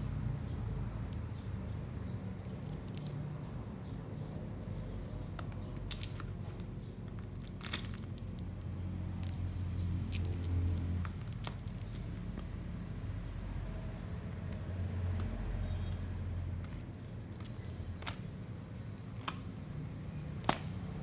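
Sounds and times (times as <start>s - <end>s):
steady low hum: 0.0s - 21.0s
packaging crinkling: 7.2s - 12.5s.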